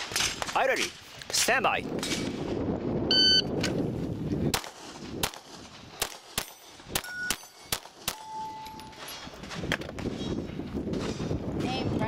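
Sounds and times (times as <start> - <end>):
shot timer beeps: 3.1 - 3.5
pistol shots: 4.5 - 8.3.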